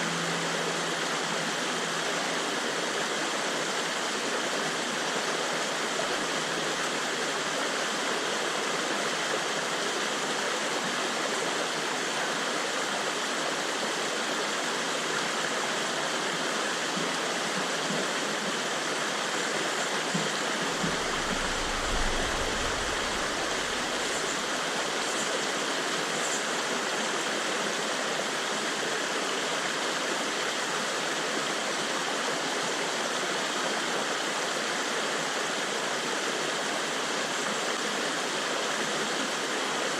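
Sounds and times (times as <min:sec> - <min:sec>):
river water rushing: 0:00.0 - 0:39.9
low rumble or thud: 0:20.8 - 0:24.5.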